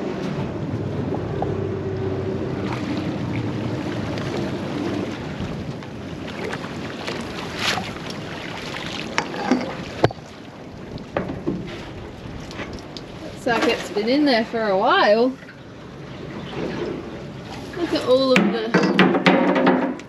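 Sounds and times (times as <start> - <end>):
wind on microphone: 0.0 - 8.4
water splashes: 0.0 - 19.5
boat engine humming: 0.0 - 20.0
water wash: 0.0 - 20.0
sharp knocks: 18.4 - 20.0.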